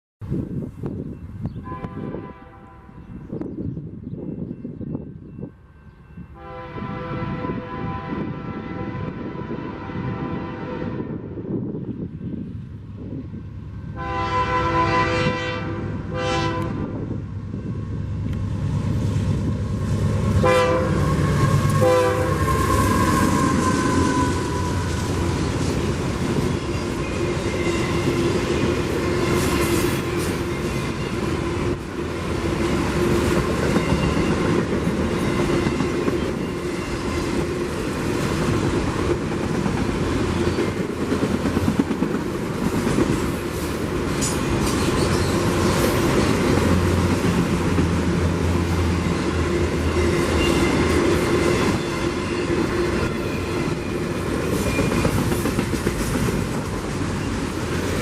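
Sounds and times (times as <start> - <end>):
train wheels clacking over rail joints: 48.9 - 57.8.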